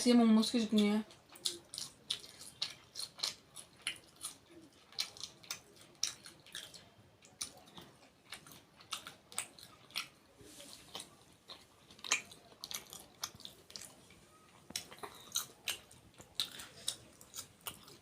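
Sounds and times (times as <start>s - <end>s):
chewing and biting food: 0.8s - 18.0s.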